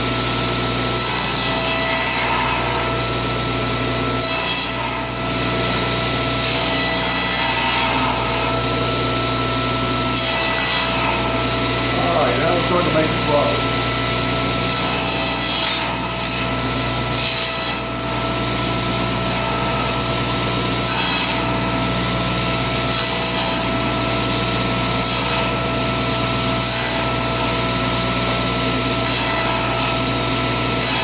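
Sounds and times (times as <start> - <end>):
table saw running: 0.0 - 31.0
saw blade cutting wood: 0.6 - 24.2, 24.9 - 31.0.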